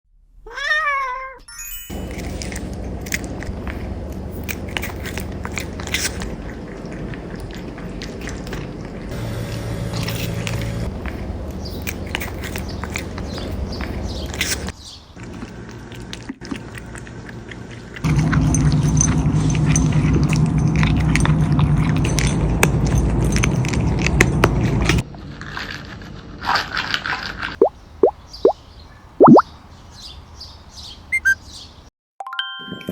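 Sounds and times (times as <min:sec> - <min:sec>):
cat meowing: 0:00.5 - 0:01.5
cat crunching treats: 0:01.9 - 0:09.1, 0:10.1 - 0:27.6
steady low hum: 0:01.9 - 0:14.7
rising cartoon sound effects: 0:29.2 - 0:29.4.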